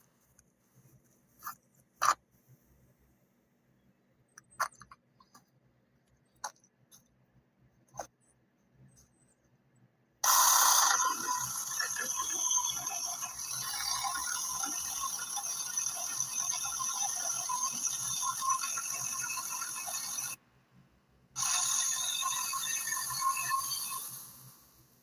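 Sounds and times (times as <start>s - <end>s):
mini chainsaw motor whine: 10.2s - 20.4s, 21.4s - 24.3s.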